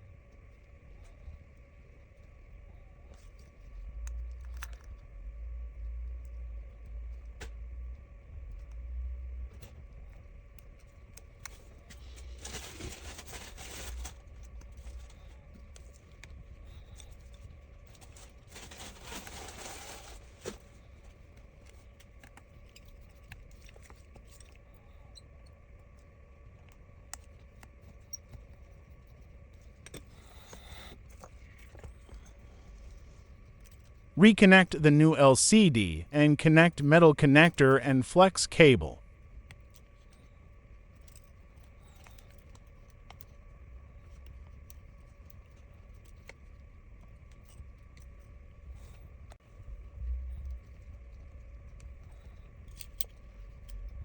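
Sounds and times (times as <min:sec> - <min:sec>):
steady low hum: 0:00.0 - 0:54.0
scraping and rustling: 0:18.0 - 0:20.7.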